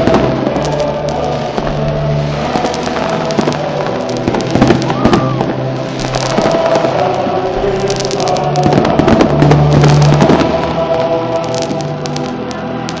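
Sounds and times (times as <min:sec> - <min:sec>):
fireworks bangs and crackles: 0:00.0 - 0:13.0.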